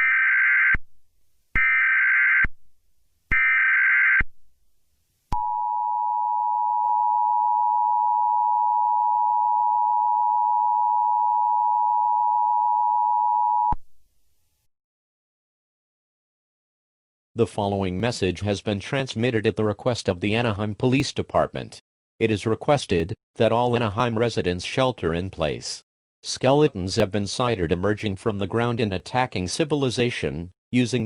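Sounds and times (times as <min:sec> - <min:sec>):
two-tone alarm: 0:00.0 - 0:00.8, 0:01.6 - 0:02.5, 0:03.3 - 0:04.3, 0:05.4 - 0:13.8.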